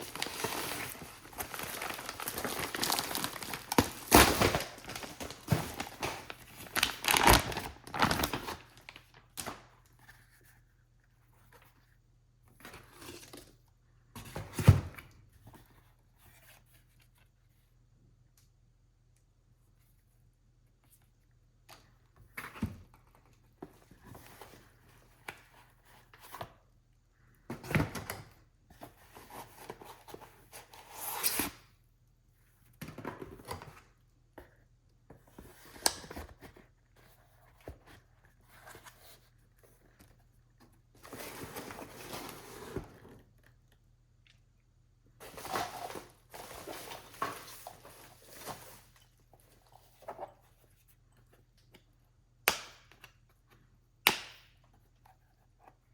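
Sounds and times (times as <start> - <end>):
packaging rustling and tearing: 0.0 - 9.6.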